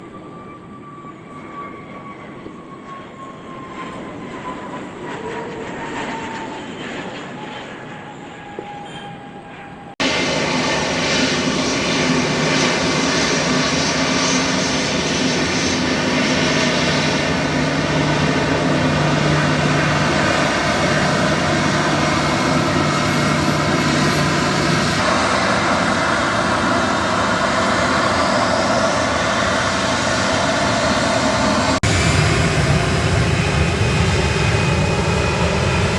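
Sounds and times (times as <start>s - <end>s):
loud jet engine roar: 0.0s - 35.9s
steady engine tones: 10.0s - 35.9s.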